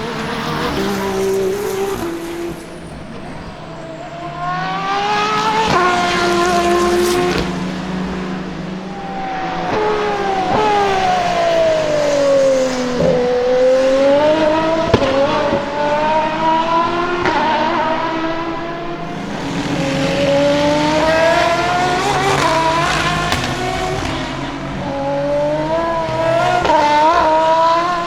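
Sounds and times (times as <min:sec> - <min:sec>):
race car engine accelerating: 0:00.0 - 0:28.0.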